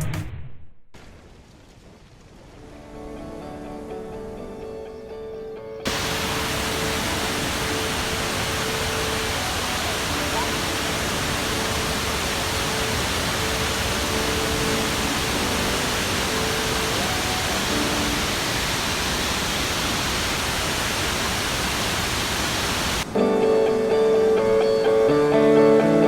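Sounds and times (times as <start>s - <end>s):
waterfall roaring: 5.9s - 24.1s
guitar music: 12.7s - 18.3s, 23.1s - 26.0s.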